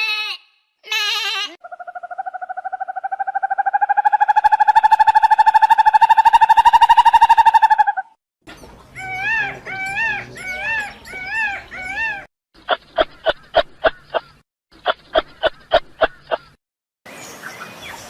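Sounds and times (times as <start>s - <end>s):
rising and falling animal calls: 0.0s - 8.2s, 8.9s - 12.3s.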